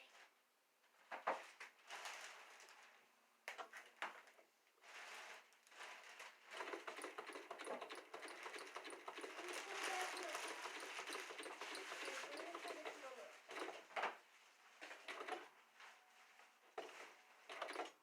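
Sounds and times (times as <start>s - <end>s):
sewing machine stitching: 6.4s - 14.0s, 14.9s - 15.5s, 16.8s - 18.0s
sewing machine clicks and knocks: 6.5s - 14.2s, 14.8s - 15.5s, 16.8s - 18.0s.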